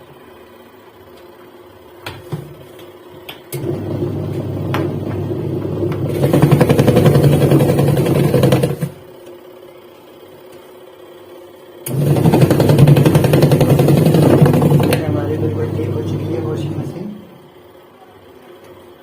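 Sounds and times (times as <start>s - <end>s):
washing machine motor running: 2.7s - 19.0s.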